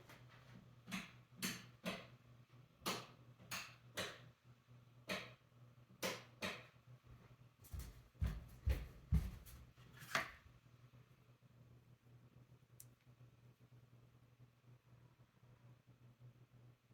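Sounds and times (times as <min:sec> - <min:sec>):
low steady hum: 0:06.8 - 0:16.9.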